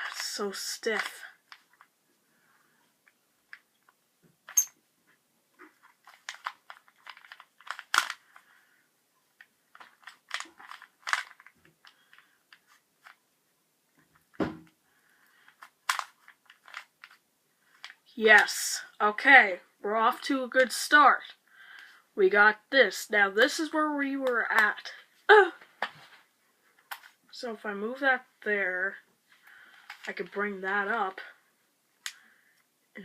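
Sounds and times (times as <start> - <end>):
plastic puzzle cube clicking: 6.0 - 8.4, 9.4 - 13.2, 15.4 - 18.5.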